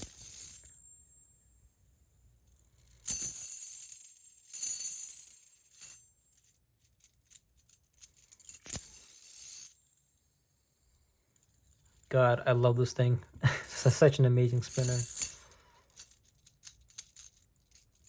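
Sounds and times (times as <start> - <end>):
fidget spinner metallic jingling: 0.0 - 1.8, 2.5 - 18.0.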